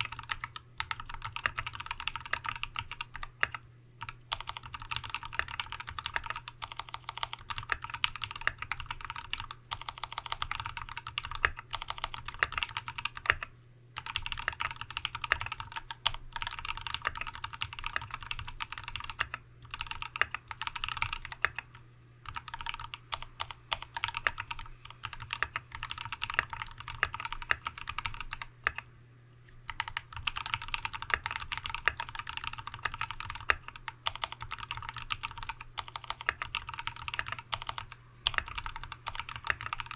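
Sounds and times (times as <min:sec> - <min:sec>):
fast typing on mechanical keyboard: 0:00.0 - 0:28.8, 0:29.7 - 0:39.9.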